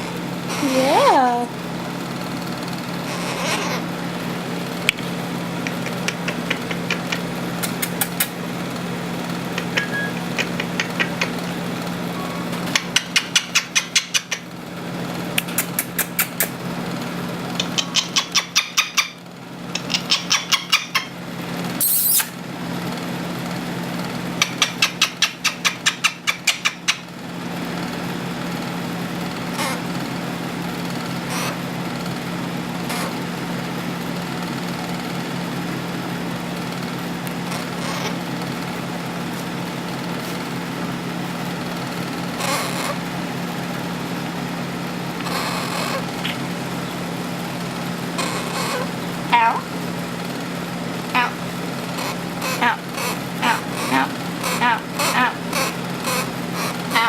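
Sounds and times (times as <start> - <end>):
air conditioner humming: 0.0 - 57.0
bird squeak: 3.0 - 3.8, 9.6 - 11.4, 12.1 - 14.4, 21.8 - 22.4, 48.2 - 48.9
bird clicking calls: 4.9 - 8.4, 9.4 - 11.7, 12.6 - 14.5, 15.3 - 16.6, 17.5 - 21.1, 21.8 - 22.4, 24.4 - 27.1.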